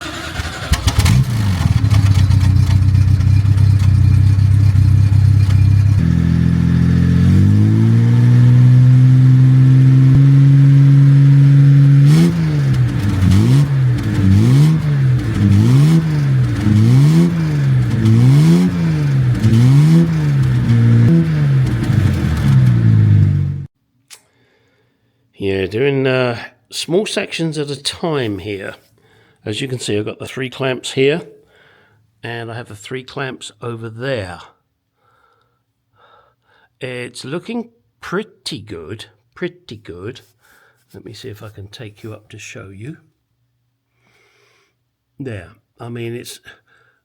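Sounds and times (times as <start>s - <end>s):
engine revving: 0.0s - 23.7s.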